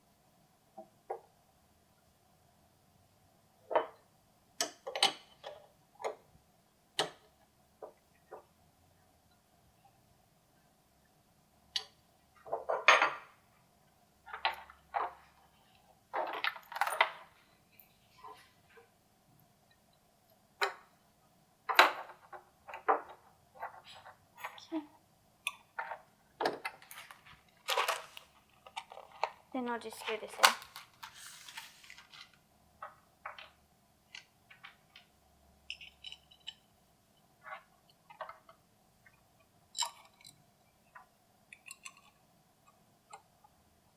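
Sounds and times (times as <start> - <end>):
small parts clicking and scraping: 21.7 - 24.8, 25.4 - 43.6.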